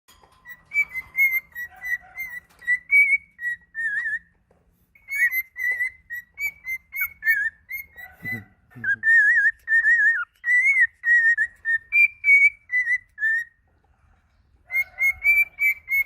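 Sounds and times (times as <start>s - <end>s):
cockatiel whistling: 0.4s - 4.3s, 5.0s - 13.6s, 14.7s - 16.0s.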